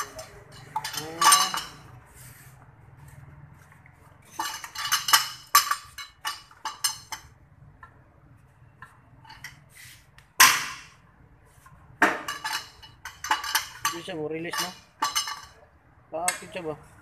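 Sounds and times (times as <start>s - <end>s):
metal tools clinking: 0.0s - 2.0s, 4.2s - 7.4s, 12.2s - 15.7s.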